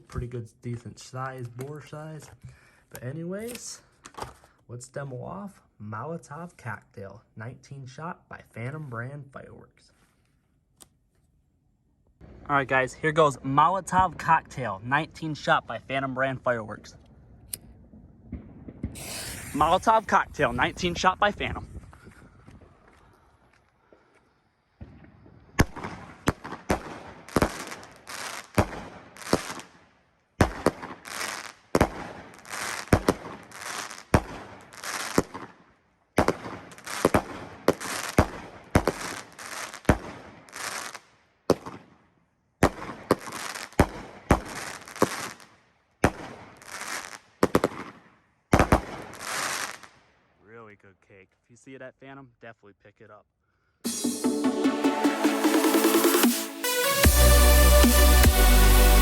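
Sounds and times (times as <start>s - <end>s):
firework cake shots and crackling: 18.3s - 21.5s, 24.8s - 29.8s, 30.4s - 35.6s, 36.2s - 42.0s, 42.6s - 50.0s.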